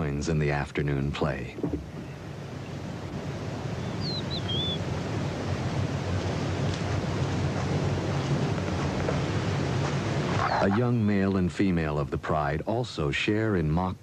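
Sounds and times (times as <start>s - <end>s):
rushing wind: 1.0s - 11.2s
warbling bird call: 3.8s - 4.9s, 10.3s - 11.0s.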